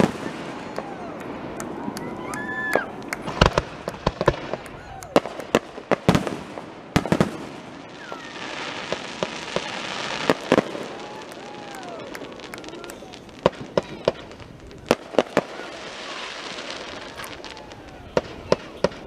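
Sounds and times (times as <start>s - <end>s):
fireworks bangs and pops: 0.0s - 19.0s
fireworks hissing crackle: 0.0s - 19.0s.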